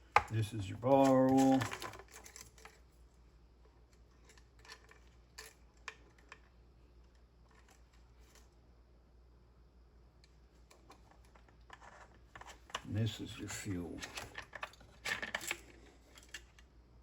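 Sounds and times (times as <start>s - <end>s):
objects clicking and tapping: 0.0s - 2.8s
faint room hum: 0.0s - 17.0s.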